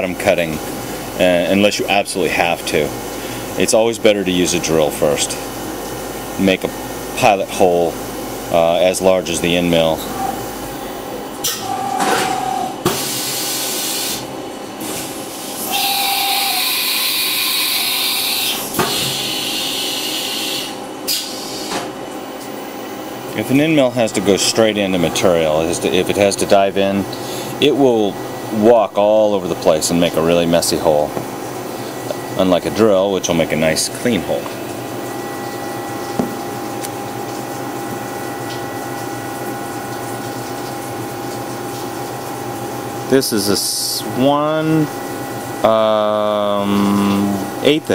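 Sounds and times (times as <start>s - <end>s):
milling machine whine and hum: 0.0s - 47.9s
cnc mill drilling: 15.3s - 21.7s.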